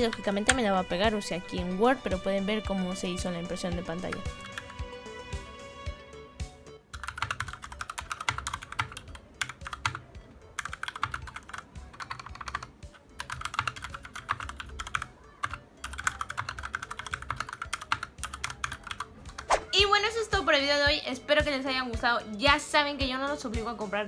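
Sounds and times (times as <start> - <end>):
mechanical keyboard typing: 0.0 - 0.9, 6.9 - 19.5.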